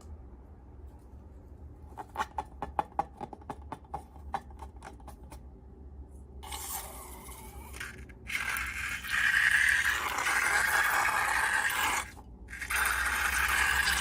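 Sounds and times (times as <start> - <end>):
slime rasping scrape: 6.4 - 14.0.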